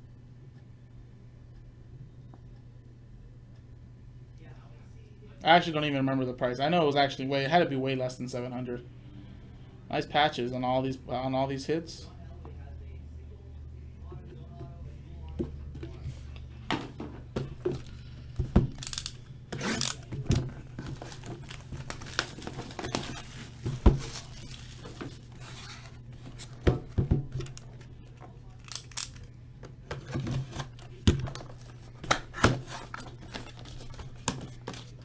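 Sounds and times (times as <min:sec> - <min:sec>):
steady low hum: 0:00.0 - 0:35.0
wrappers crinkling and tearing: 0:17.8 - 0:29.3.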